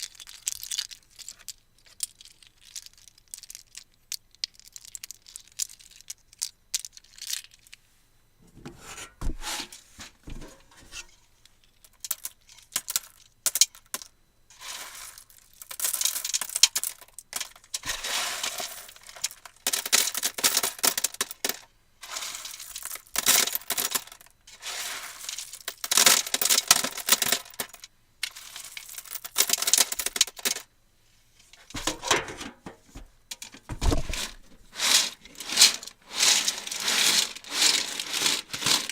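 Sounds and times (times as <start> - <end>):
coins clinking and rattling: 14.7 - 30.7, 33.4 - 38.9.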